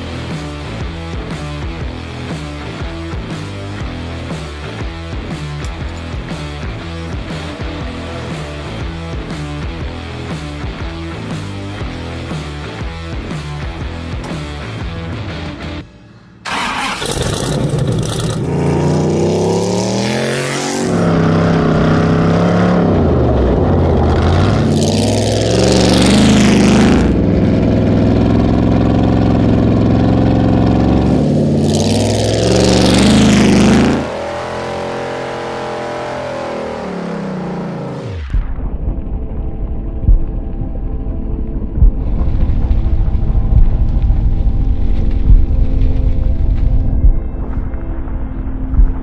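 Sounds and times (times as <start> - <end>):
car engine accelerating: 16.4 - 38.5.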